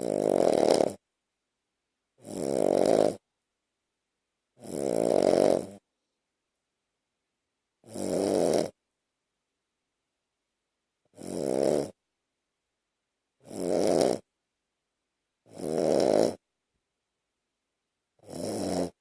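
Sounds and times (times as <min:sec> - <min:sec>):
dog snoring: 0:00.0 - 0:01.0, 0:02.2 - 0:03.2, 0:04.6 - 0:05.8, 0:07.8 - 0:08.8, 0:11.1 - 0:12.0, 0:13.4 - 0:14.3, 0:15.4 - 0:16.4, 0:18.2 - 0:19.0.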